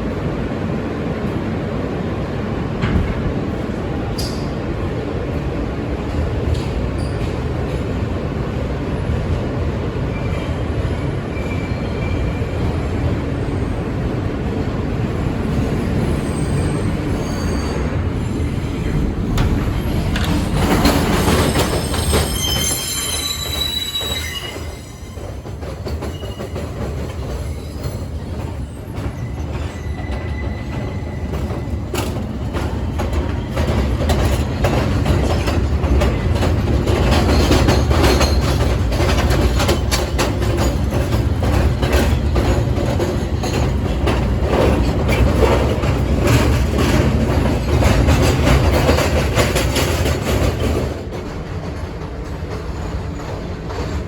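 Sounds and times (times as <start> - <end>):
subway train rumbling on rails: 0.0 - 54.0
high wheel squeal: 16.1 - 18.0, 19.9 - 25.4, 27.4 - 31.7.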